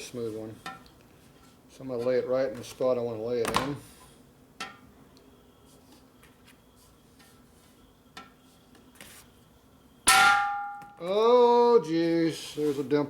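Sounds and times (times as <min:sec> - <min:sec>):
hard bang on metal tank ringing: 0:10.1 - 0:10.8.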